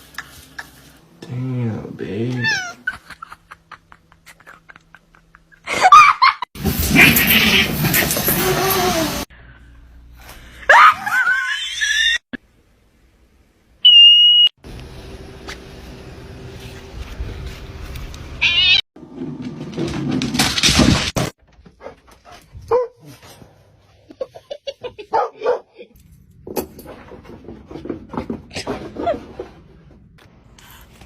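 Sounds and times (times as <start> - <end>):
high beep: 13.9 - 14.5.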